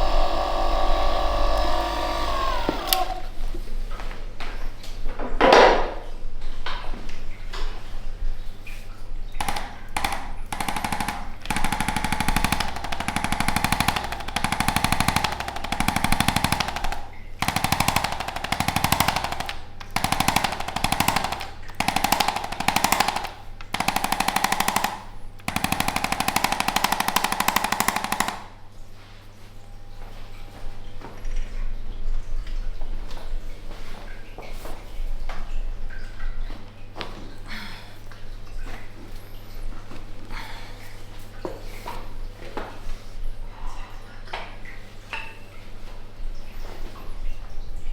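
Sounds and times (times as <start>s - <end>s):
massage gun hammering buzz: 0.0s - 3.4s, 9.4s - 28.7s.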